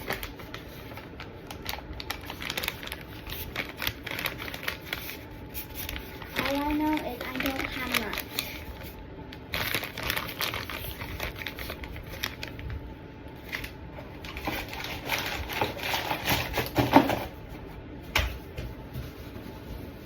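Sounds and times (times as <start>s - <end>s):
plastic bag crinkling: 0.0s - 17.2s.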